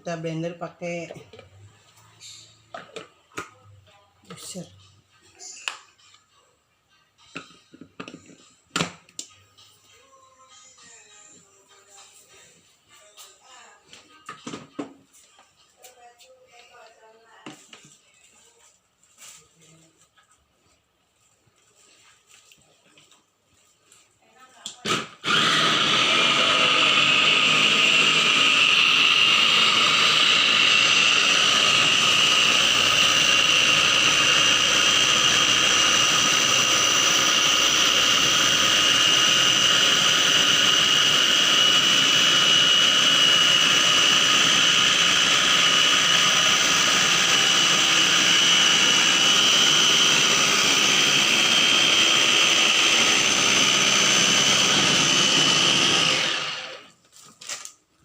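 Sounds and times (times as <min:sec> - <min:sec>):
blender whining: 0:24.8 - 0:57.0.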